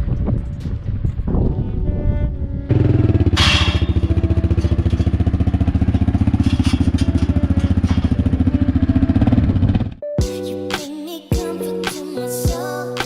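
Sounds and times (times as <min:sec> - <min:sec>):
engine puttering: 0:02.6 - 0:10.0.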